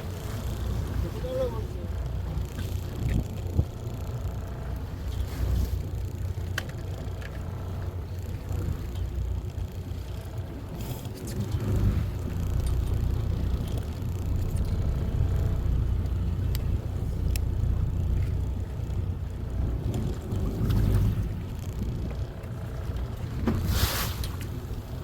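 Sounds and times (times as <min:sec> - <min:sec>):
boat engine rumbling: 0:00.0 - 0:25.0
water noise: 0:00.0 - 0:25.0
wind: 0:00.0 - 0:25.0.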